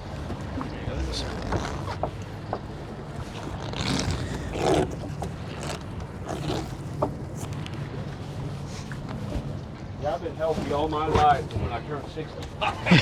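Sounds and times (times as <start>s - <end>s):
boat engine humming: 0.0s - 9.4s
scrapes and knocks on boat: 0.0s - 9.6s, 10.4s - 11.8s.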